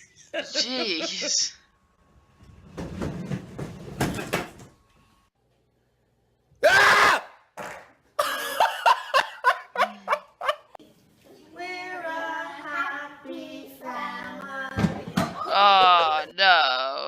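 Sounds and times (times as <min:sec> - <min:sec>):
person laughing: 0:00.0 - 0:01.6, 0:08.2 - 0:10.8, 0:15.5 - 0:16.3
loud vocal outburst: 0:06.6 - 0:07.4.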